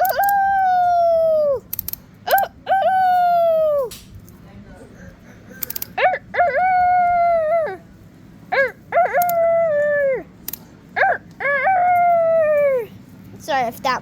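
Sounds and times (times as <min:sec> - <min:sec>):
person making howling calls: 0:00.0 - 0:01.7, 0:02.3 - 0:03.9, 0:06.0 - 0:07.9, 0:08.5 - 0:10.3, 0:11.0 - 0:13.0.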